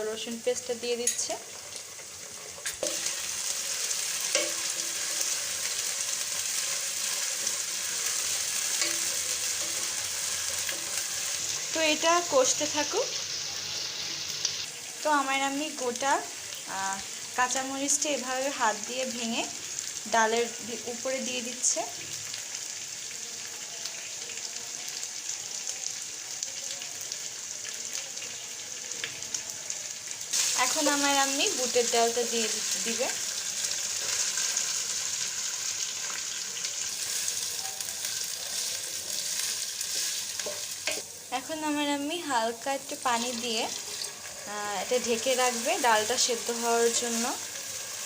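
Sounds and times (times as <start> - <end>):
food sizzling in a pan: 0.0 - 48.0
spoon clinking against pan: 1.0 - 1.3, 4.3 - 5.0, 8.7 - 10.0.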